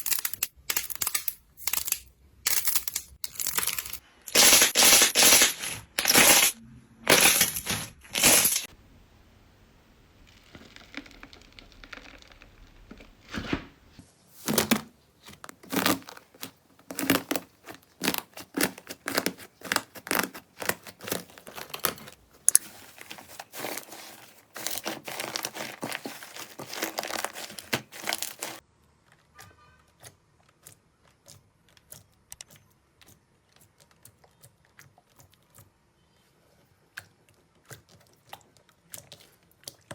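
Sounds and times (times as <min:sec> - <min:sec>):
slime crackling and popping: 0:10.2 - 0:13.6, 0:15.5 - 0:28.6
slime squishes: 0:10.2 - 0:39.9.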